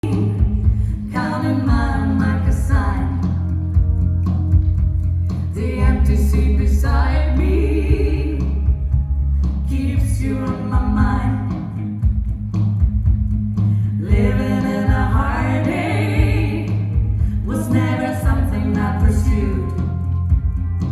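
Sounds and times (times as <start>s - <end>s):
bass line: 0.0s - 20.9s
guitar: 0.0s - 20.9s
person singing: 14.0s - 20.3s.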